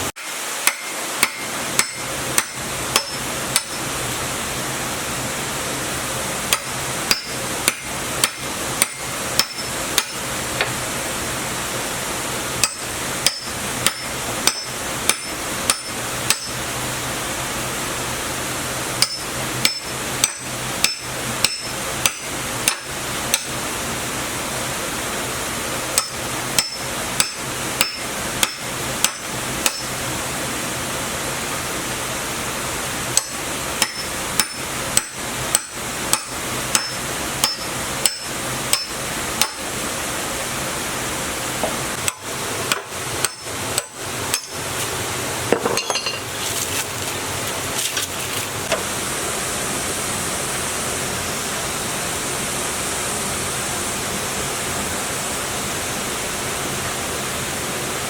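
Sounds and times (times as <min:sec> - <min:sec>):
hammer striking metal: 0:00.6 - 0:03.9, 0:06.5 - 0:10.7, 0:12.6 - 0:16.6, 0:19.0 - 0:23.5, 0:26.0 - 0:29.9, 0:33.2 - 0:39.6, 0:41.6 - 0:44.6, 0:45.5 - 0:46.3.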